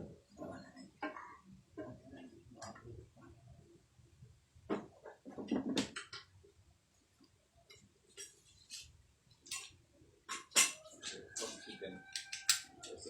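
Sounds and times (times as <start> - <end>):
metal tools clinking and knocking: 10.3 - 13.0.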